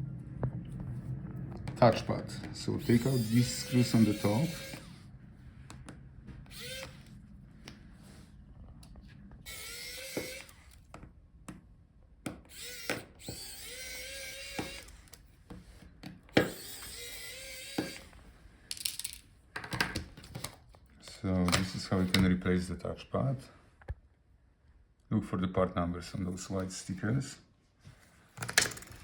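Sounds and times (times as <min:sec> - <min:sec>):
electric screwdriver whirring: 0:02.8 - 0:05.1, 0:06.4 - 0:07.2, 0:09.4 - 0:10.9, 0:12.5 - 0:15.3, 0:16.3 - 0:18.2.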